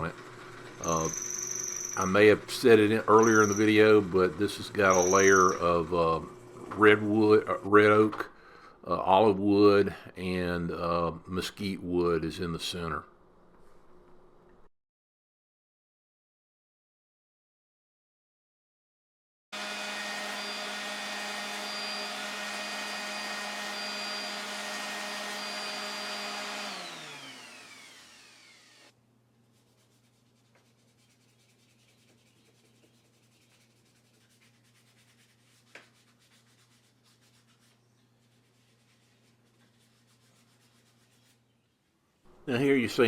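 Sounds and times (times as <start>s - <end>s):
power tool motor whining: 19.6s - 28.9s.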